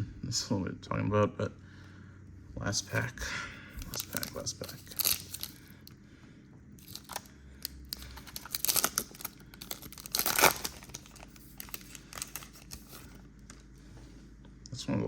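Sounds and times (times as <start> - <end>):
plastic wrapper crinkling and tearing: 3.8 - 5.8, 6.8 - 13.6.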